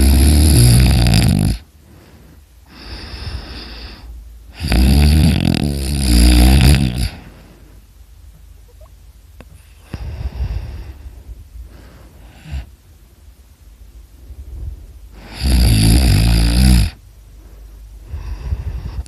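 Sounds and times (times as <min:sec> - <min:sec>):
person snoring heavily: 0:00.0 - 0:01.7, 0:02.7 - 0:07.5, 0:11.7 - 0:12.7, 0:15.1 - 0:17.0.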